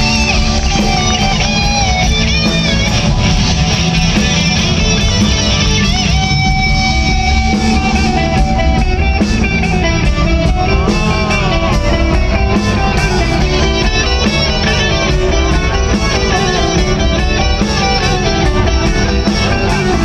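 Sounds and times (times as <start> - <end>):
bass and drums: 0.0 - 20.0
lead guitar with vibrato: 0.0 - 20.0.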